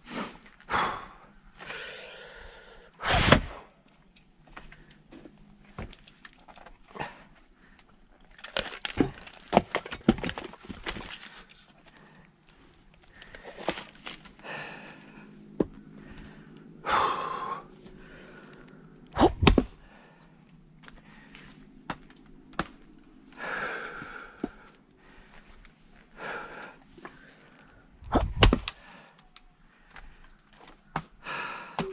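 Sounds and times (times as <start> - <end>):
wood cracking: 5.8 - 14.4
firewood being split: 5.8 - 14.7, 19.2 - 19.8, 28.0 - 31.1
heavy strikes on wood: 19.2 - 19.7, 28.1 - 28.7.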